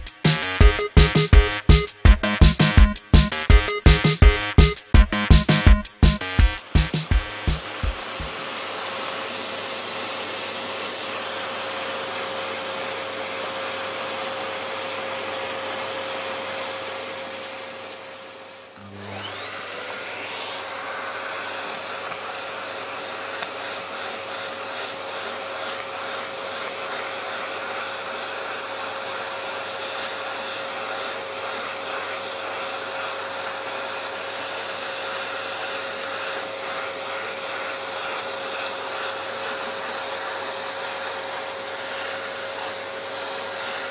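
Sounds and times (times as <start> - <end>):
vacuum cleaner motor whine: 6.3 - 43.9.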